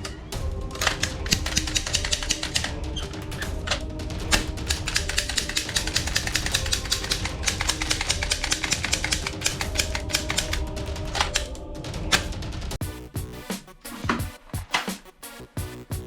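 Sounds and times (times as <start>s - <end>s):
toy gun rattling clicks: 4.7s - 10.6s.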